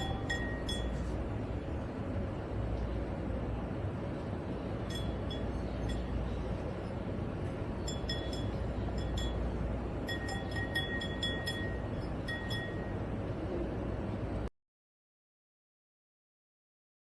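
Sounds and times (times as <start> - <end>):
high chime-like tinkling: 0.0 - 1.2, 4.8 - 6.6, 7.7 - 13.2
low background rumble: 0.0 - 14.5.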